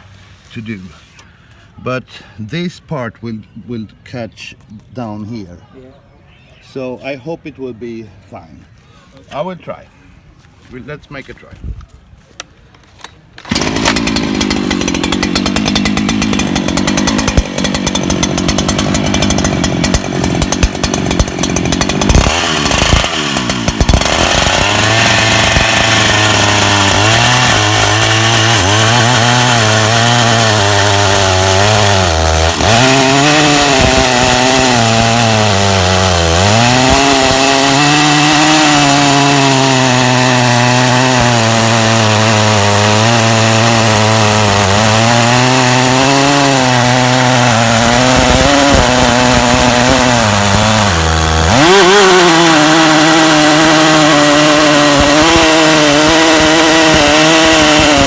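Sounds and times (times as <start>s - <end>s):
chainsaw cutting a log: 13.4s - 58.0s.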